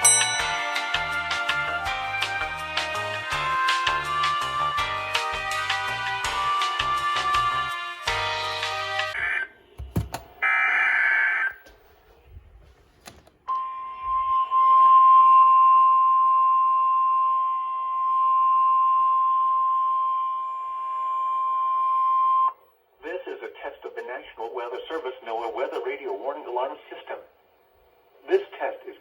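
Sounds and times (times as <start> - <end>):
steady high alarm tone: 9.2 - 9.6, 10.4 - 11.6, 13.5 - 22.6
harsh burst of data tones: 10.4 - 11.5.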